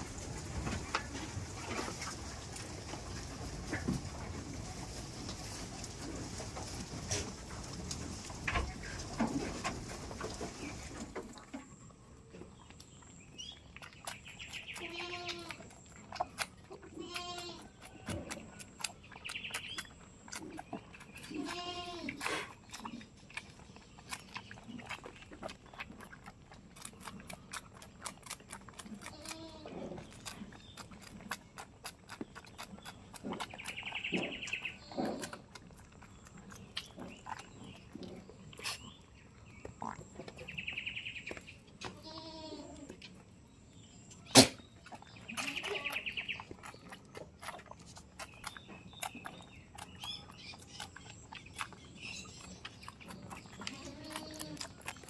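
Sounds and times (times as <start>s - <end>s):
goats bleating: 14.8s - 15.6s, 16.9s - 17.7s, 21.3s - 22.2s, 41.9s - 42.8s, 53.6s - 54.7s.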